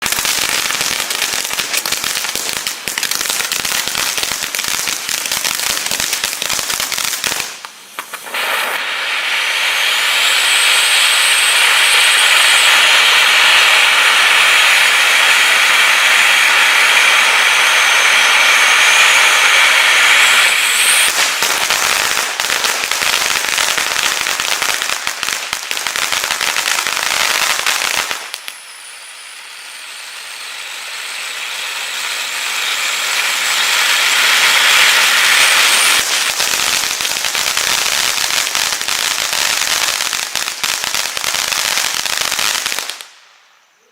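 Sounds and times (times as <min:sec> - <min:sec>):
firework fountain crackling: 0:00.0 - 0:43.9
firework hissing rush: 0:00.0 - 0:43.9
faint high whistle: 0:07.7 - 0:21.9, 0:27.0 - 0:36.4.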